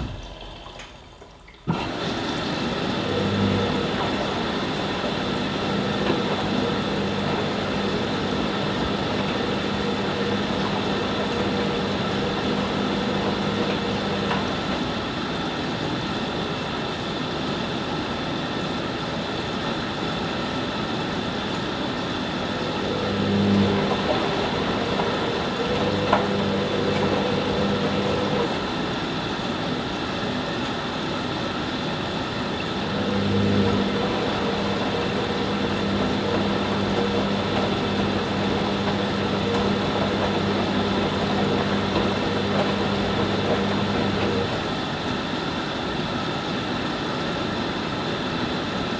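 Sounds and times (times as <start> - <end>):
washing machine drum motor humming: 0.0 - 17.3, 19.2 - 46.6
steady whir: 22.4 - 28.7, 32.8 - 44.7.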